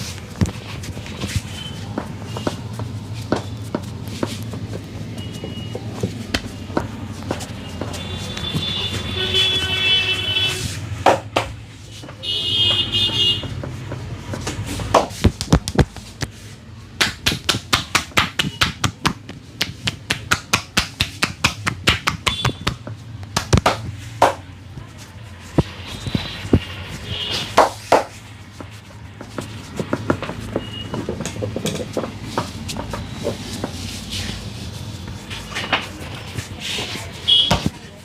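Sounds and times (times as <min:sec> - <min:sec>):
hands slapping on a head: 0:14.8 - 0:16.4, 0:17.0 - 0:24.4.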